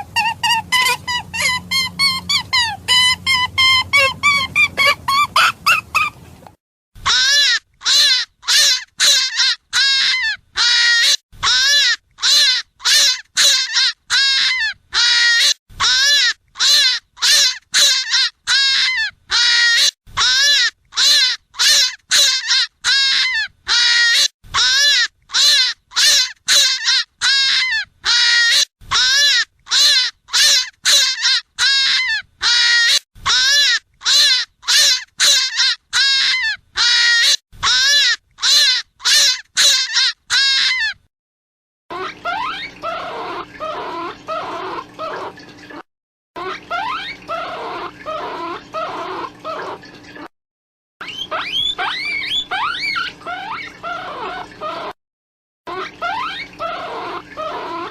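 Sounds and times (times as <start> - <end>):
hare squealing: 0.0 - 6.2, 51.0 - 55.0.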